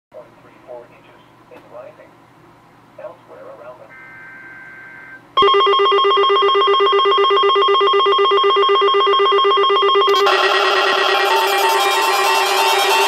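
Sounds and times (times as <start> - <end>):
rapidly pulsing electronic beep: 3.9 - 13.0.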